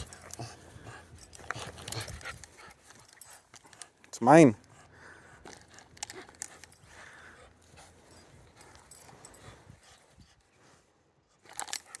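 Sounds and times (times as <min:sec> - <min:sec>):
dog moving and playing: 0:00.0 - 0:03.8.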